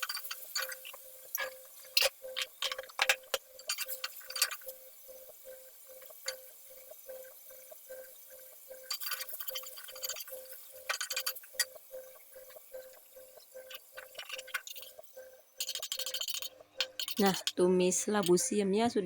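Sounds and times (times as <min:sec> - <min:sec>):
utensil clattering against a pan: 0:15.6 - 0:17.6.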